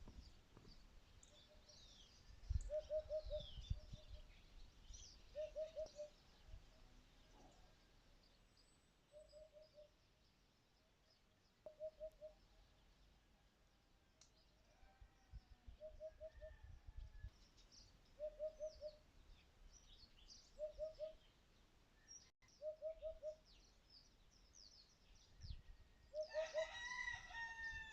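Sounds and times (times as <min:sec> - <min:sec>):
small birds chirping: 0:00.0 - 0:16.6, 0:17.2 - 0:26.5
bird repeating low call: 0:05.3 - 0:06.2.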